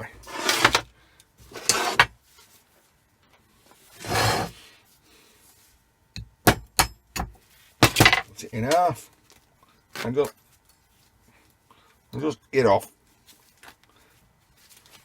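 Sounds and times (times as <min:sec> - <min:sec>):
scraping on workbench: 0:00.0 - 0:02.2, 0:04.0 - 0:04.7
soft rubbing: 0:03.9 - 0:04.6.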